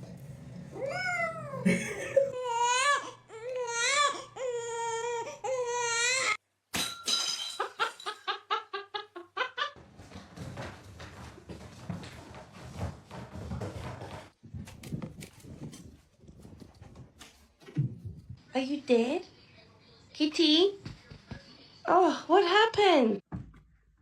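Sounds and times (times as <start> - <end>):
cat meowing: 0.8 - 1.6.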